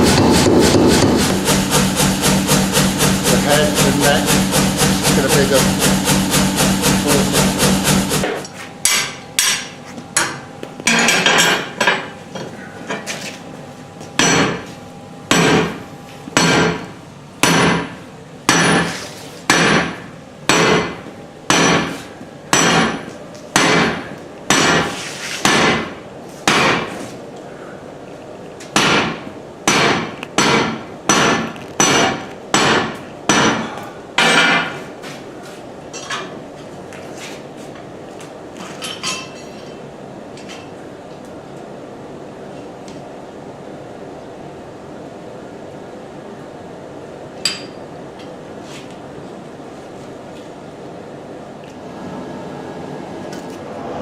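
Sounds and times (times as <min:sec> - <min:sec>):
hammer striking metal: 0:00.0 - 0:12.1, 0:14.2 - 0:14.7, 0:15.3 - 0:15.8, 0:16.4 - 0:26.9, 0:28.8 - 0:34.8.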